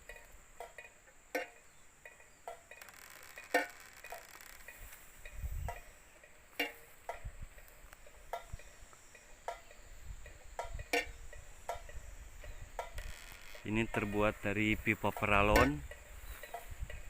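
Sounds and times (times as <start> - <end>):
wind rumble on microphone: 4.8 - 5.9, 7.1 - 7.6, 9.9 - 17.0.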